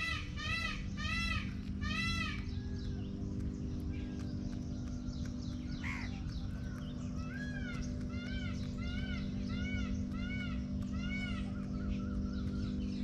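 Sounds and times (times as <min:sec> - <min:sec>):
peacock calling: 0:00.0 - 0:13.0
steady low hum: 0:00.0 - 0:13.0.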